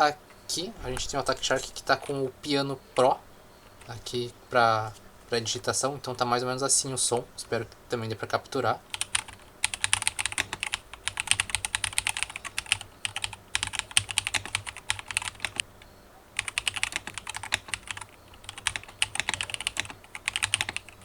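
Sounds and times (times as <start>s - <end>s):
mechanical keyboard typing: 8.9s - 15.6s, 16.4s - 21.0s.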